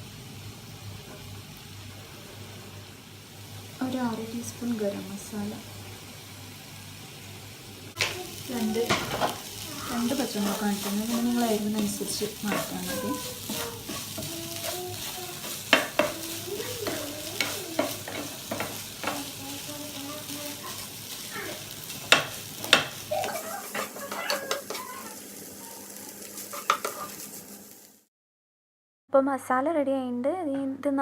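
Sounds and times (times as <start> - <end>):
meat sizzling in a frying pan: 0.0 - 28.1
spoon knocking and scraping pan: 8.0 - 25.1, 26.4 - 27.3.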